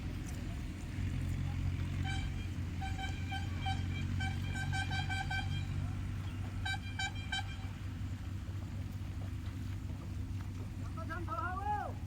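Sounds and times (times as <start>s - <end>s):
engine humming: 0.0s - 12.0s
vehicle horn short beeps: 2.0s - 5.8s, 6.6s - 7.7s.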